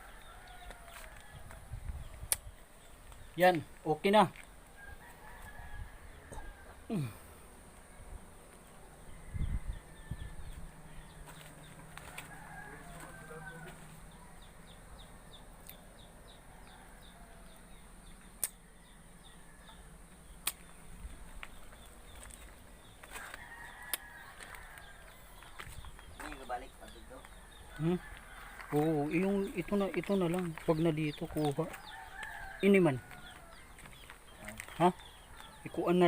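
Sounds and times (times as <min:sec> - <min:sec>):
sharp clicks: 0:18.4 - 0:18.6.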